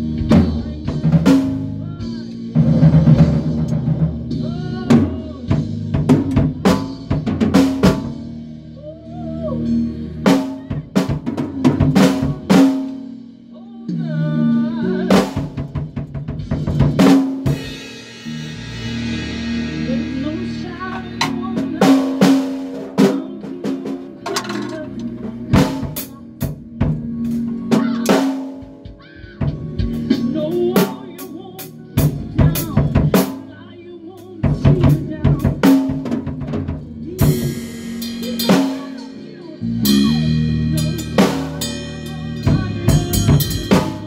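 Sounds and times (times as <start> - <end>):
rock band playing: 0.0 - 44.0
sustained bass notes: 0.0 - 44.0
long cymbal wash: 17.6 - 21.0.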